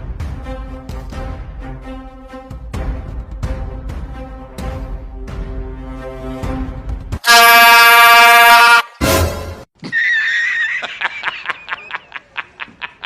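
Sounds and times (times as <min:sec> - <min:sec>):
air horn blast: 0:07.2 - 0:09.6.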